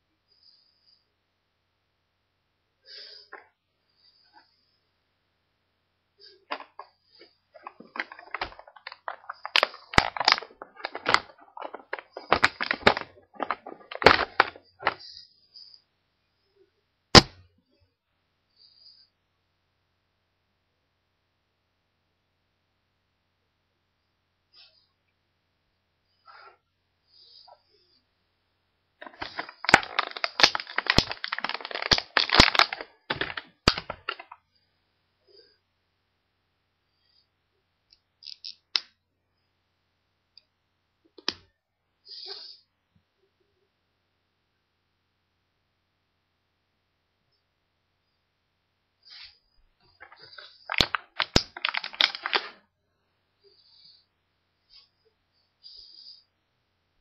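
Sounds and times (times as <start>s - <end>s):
packaging clicks and crackles: 6.5s - 15.0s, 29.0s - 34.4s, 49.9s - 52.6s.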